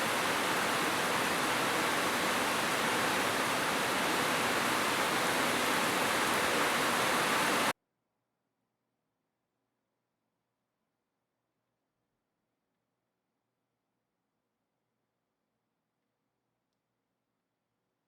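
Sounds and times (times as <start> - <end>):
heavy rain hissing: 0.0 - 7.7.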